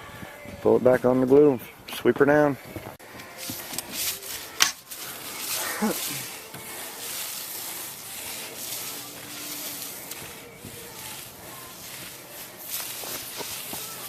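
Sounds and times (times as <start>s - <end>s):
broom sweeping rubber membrane: 3.2s - 14.0s.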